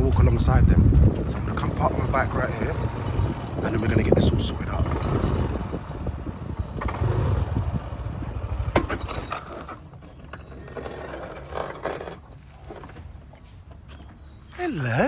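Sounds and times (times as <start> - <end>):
motorbike engine rumbling: 0.0 - 11.4
clicks and scrapes: 8.8 - 14.1.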